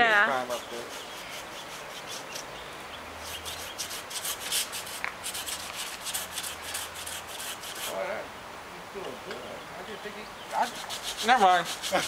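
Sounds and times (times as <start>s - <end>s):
hand saw rasping through wood: 0.3s - 2.4s, 3.2s - 8.0s, 10.6s - 12.0s.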